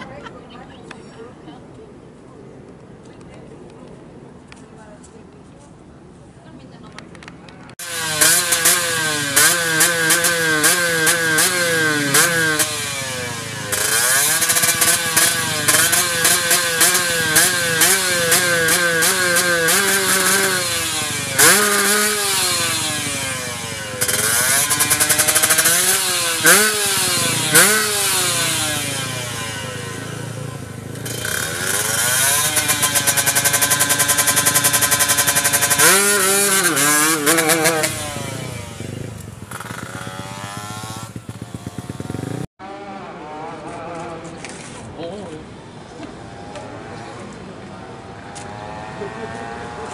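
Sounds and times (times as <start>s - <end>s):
engine crackling: 7.7s - 42.5s
motorcycle engine revving: 7.8s - 44.3s, 48.1s - 49.9s.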